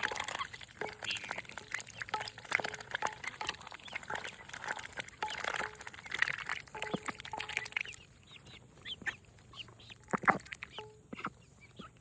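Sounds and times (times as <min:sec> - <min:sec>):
ducks quacking and chirping: 0:00.0 - 0:12.0
duck bills clicking: 0:08.8 - 0:12.0.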